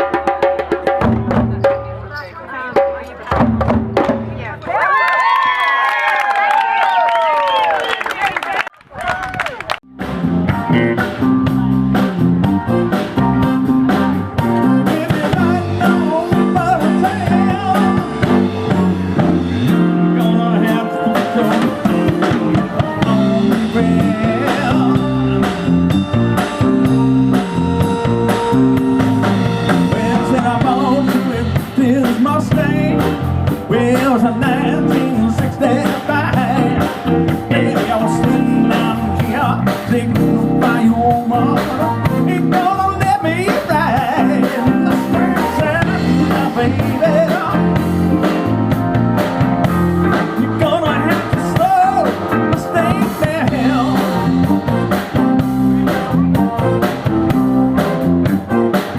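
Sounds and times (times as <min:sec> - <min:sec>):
live blues-rock band: 0:10.0 - 0:58.9
person singing: 0:13.9 - 0:28.4, 0:29.6 - 0:48.6, 0:50.1 - 0:57.0.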